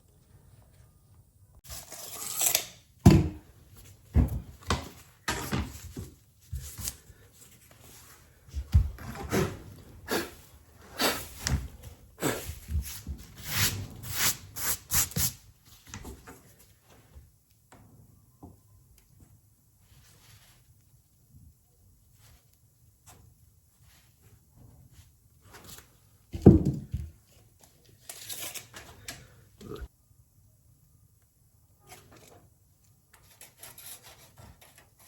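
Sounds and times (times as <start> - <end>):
brushing and scraping floor: 4.7 - 16.7
knocks on subfloor: 26.4 - 27.1.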